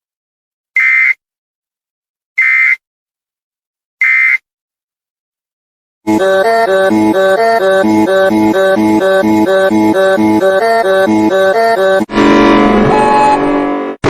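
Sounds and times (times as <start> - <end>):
electronic music: 6.1 - 14.0.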